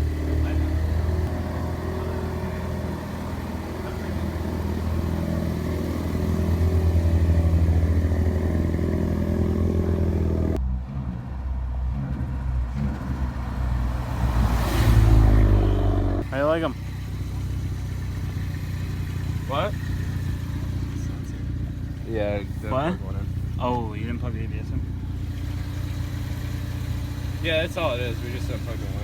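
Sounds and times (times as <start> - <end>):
car engine running: 0.0 - 29.0
road noise: 0.0 - 29.0.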